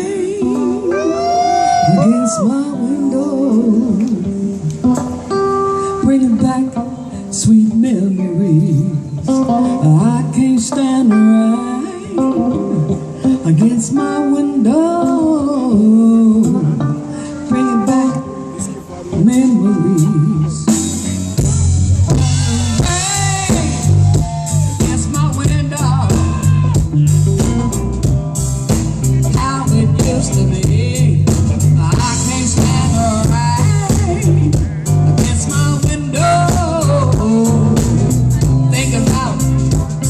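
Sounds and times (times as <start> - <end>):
electric guitar lead melody: 0.0 - 40.0
electric bass line: 19.3 - 40.0
drum kit beat: 20.0 - 40.0.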